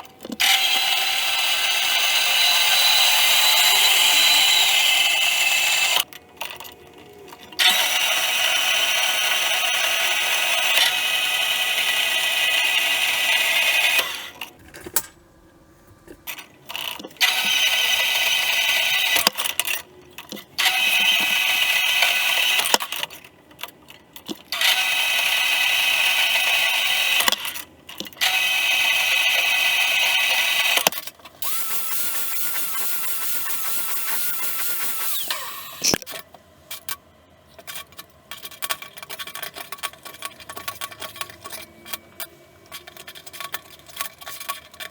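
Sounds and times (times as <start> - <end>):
power tool running in bursts: 0.4 - 6.0, 31.4 - 36.0.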